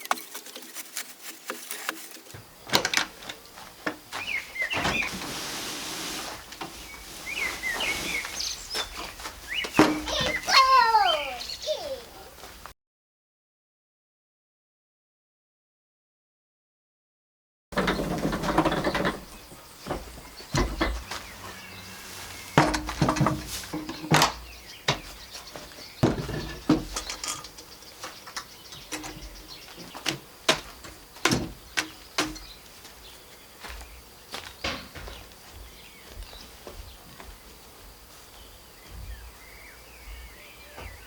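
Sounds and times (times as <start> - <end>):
dense rustling: 0.3 - 11.4, 17.8 - 40.3
sharp knocks and clatters: 8.9 - 10.4, 17.8 - 21.4, 22.4 - 32.6.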